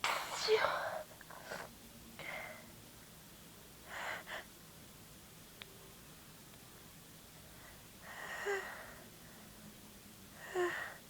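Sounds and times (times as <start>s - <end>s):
person sneezing: 0.0s - 0.9s.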